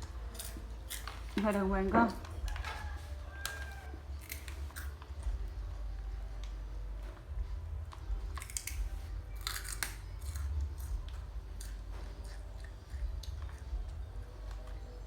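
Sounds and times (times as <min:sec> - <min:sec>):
crunchy snack chewing: 0:00.0 - 0:01.5, 0:02.1 - 0:05.5, 0:07.9 - 0:14.8.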